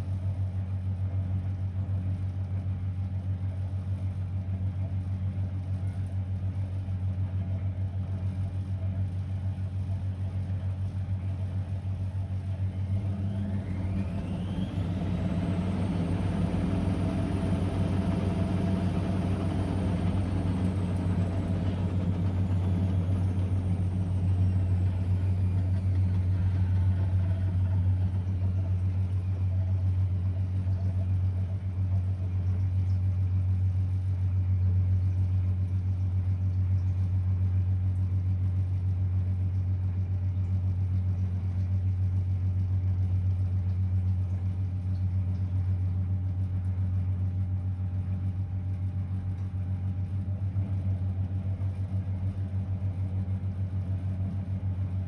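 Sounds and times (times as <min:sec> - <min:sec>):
washing machine humming: 0:09.9 - 0:55.0
drum motor whining: 0:12.9 - 0:29.5.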